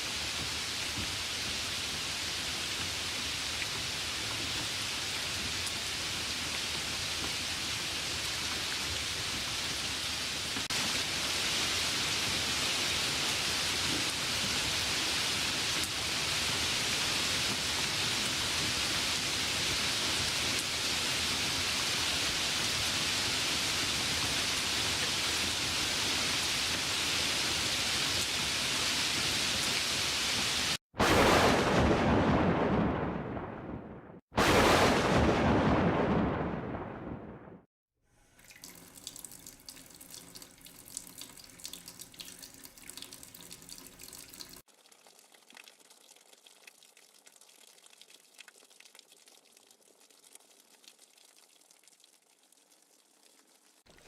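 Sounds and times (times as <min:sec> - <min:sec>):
rain hiss: 0:00.0 - 0:33.0
thunderclap rumbling: 0:31.0 - 0:37.7.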